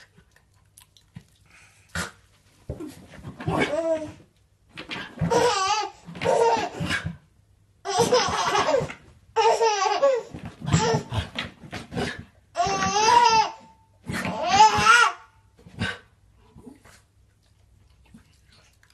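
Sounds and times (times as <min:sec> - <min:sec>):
baby laughing: 0:05.3 - 0:06.8, 0:07.9 - 0:11.1.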